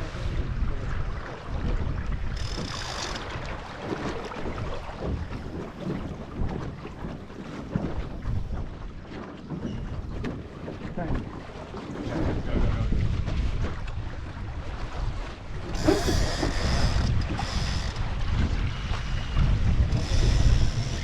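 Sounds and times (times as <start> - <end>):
water splashing along hull: 0.0 - 21.0
wind buffeting microphone: 0.0 - 21.0.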